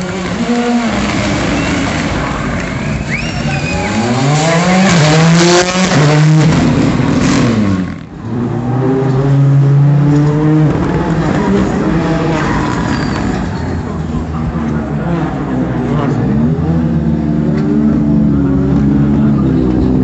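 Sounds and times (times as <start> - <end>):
rally car engine revving hard: 0.0 - 13.9.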